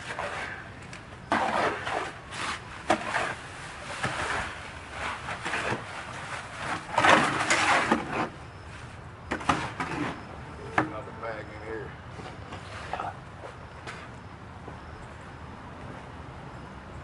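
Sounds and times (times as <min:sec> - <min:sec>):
tool scraping wet concrete: 0:00.0 - 0:00.6, 0:01.3 - 0:08.4.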